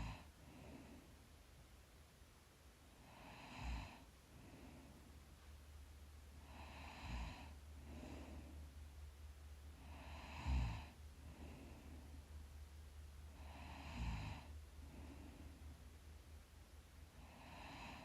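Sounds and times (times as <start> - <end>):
person snoring softly: 0.0 - 1.1, 3.0 - 5.0, 6.4 - 8.7, 9.8 - 12.2, 13.3 - 15.8, 17.2 - 18.0.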